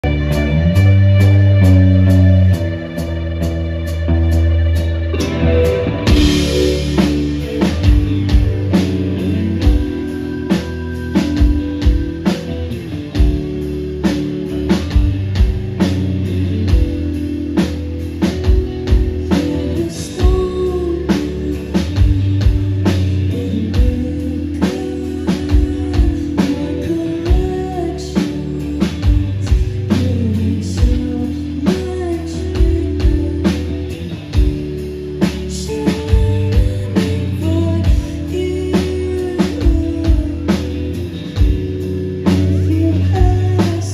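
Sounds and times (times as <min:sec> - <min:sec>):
bass guitar: 0:00.0 - 0:43.9
drum kit beat: 0:00.0 - 0:43.9
electric guitar: 0:00.0 - 0:43.9
person singing: 0:18.9 - 0:34.5, 0:35.2 - 0:41.4, 0:42.2 - 0:43.9.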